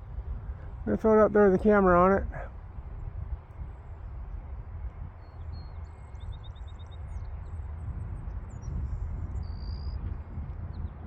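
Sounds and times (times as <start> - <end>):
steady low rumble: 0.0 - 11.0
small birds chirping: 8.3 - 11.0.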